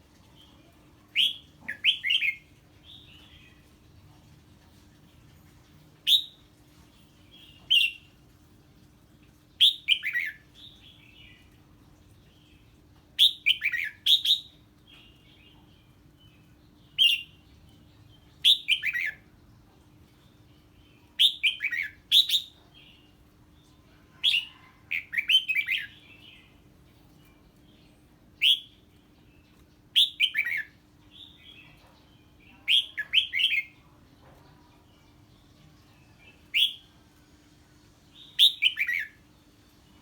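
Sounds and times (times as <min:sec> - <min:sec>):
faint steady hum: 0:00.0 - 0:40.0
bird singing: 0:20.5 - 0:37.3, 0:38.0 - 0:40.0.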